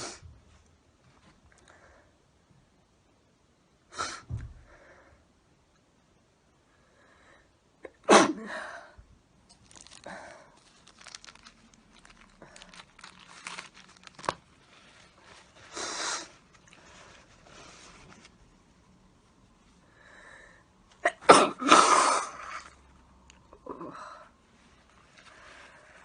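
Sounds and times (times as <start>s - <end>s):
person sneezing: 7.9s - 8.7s, 21.0s - 22.6s
tissue rustling and crinkling: 9.4s - 19.8s
person blowing nose: 15.6s - 16.4s.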